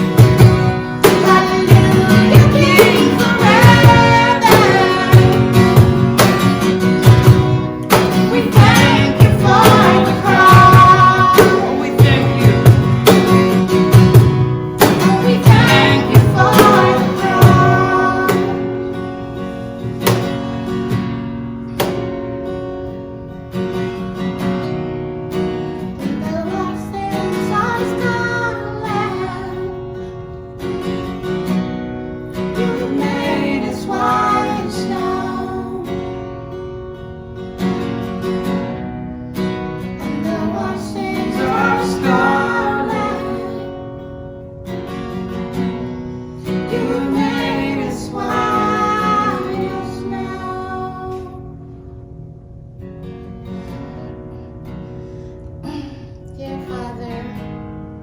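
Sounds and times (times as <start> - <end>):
acoustic guitar: 0.0 - 58.0
person singing: 1.0 - 5.9, 8.3 - 12.9, 14.8 - 18.7, 40.1 - 43.7, 46.7 - 51.4.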